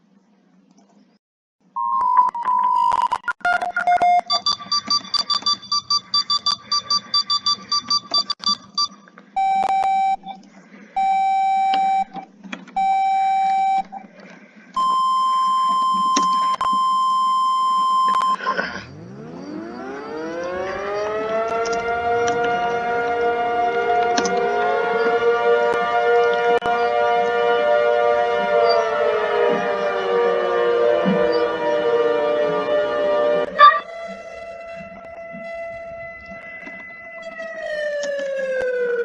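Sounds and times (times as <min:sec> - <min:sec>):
electronic alarm beeps and tones: 0:01.8 - 0:10.4, 0:11.0 - 0:12.2, 0:12.8 - 0:14.0, 0:14.8 - 0:21.6, 0:33.5 - 0:39.0
siren rising: 0:09.4 - 0:10.2, 0:11.0 - 0:12.2, 0:12.8 - 0:13.9, 0:14.8 - 0:39.0.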